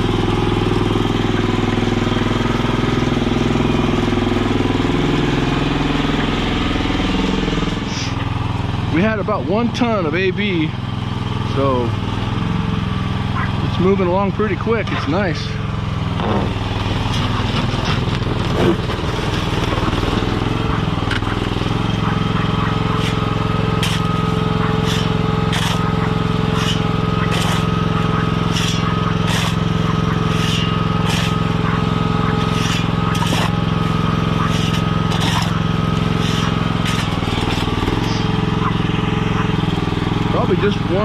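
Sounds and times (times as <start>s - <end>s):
engine running: 0.0s - 41.0s
steady whine: 12.8s - 41.0s.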